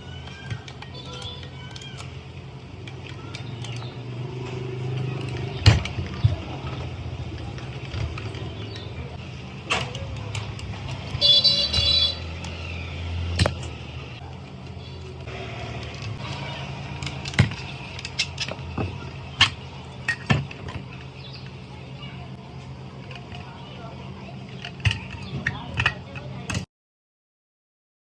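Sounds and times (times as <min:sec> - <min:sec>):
traffic engine hum: 0:00.0 - 0:26.7
vehicle horn: 0:11.1 - 0:12.4.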